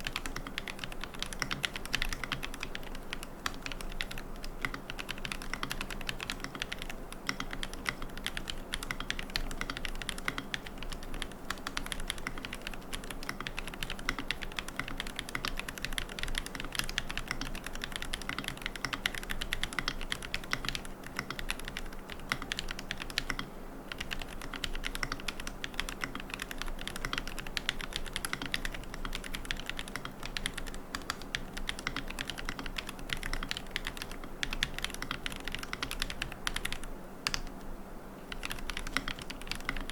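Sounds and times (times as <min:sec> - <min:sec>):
mechanical keyboard typing: 0:00.0 - 0:37.5, 0:38.3 - 0:39.9.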